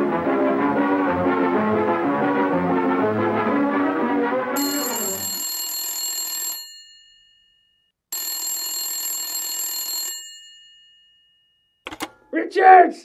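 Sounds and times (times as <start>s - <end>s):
telephone ringing: 4.6s - 12.1s.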